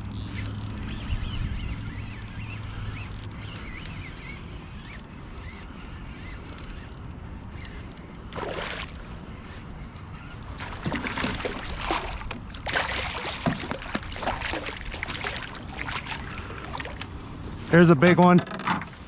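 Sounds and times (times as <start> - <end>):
low wind rumble: 0.0 - 18.2
water splashing against a boat: 8.2 - 9.4, 10.1 - 17.2.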